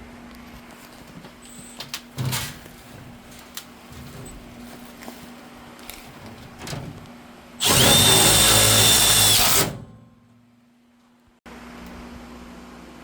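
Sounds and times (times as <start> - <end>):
power drill whining: 7.6 - 9.8.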